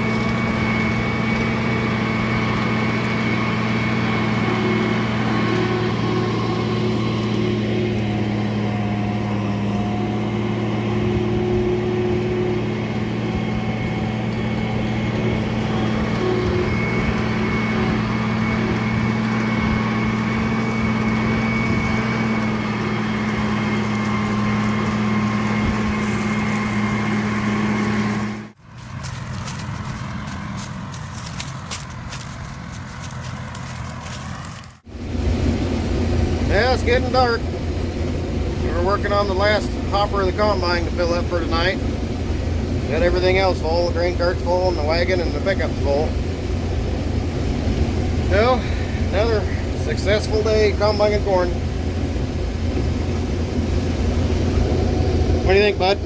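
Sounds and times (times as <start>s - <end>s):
combine harvester engine hum: 0.0s - 56.0s
low rumble with crackling: 0.0s - 56.0s.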